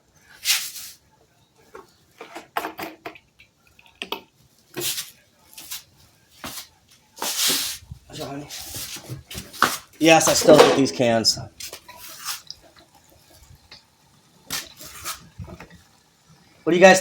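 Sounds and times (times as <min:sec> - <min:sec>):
hard objects knocking and clattering: 0:01.8 - 0:04.3, 0:10.2 - 0:11.0.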